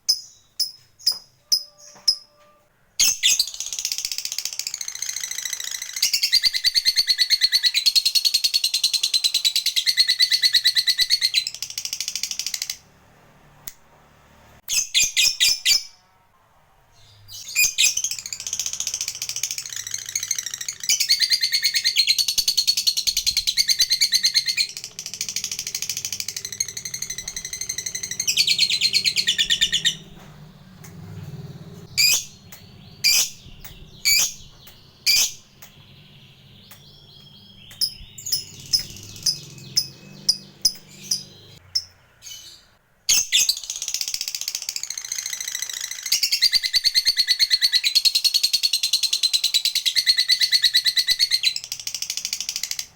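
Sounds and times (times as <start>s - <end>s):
lovebird high-pitched trill: 0.1s - 12.7s, 17.4s - 30.3s, 31.9s - 43.8s.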